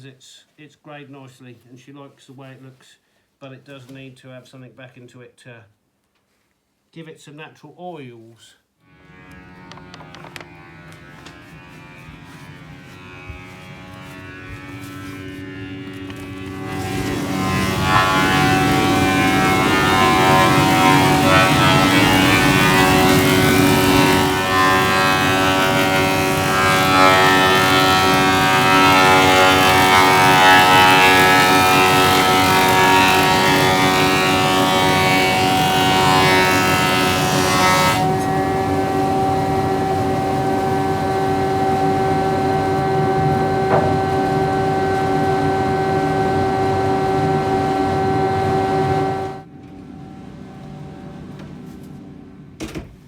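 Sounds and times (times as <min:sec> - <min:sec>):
woodworking machine motor running: 0:09.0 - 0:51.6
saw cutting timber hiss: 0:09.4 - 0:36.0.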